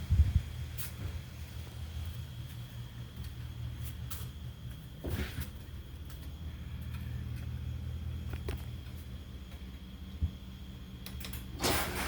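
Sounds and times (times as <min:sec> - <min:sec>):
garage door opener motor humming: 0:10.4 - 0:12.0.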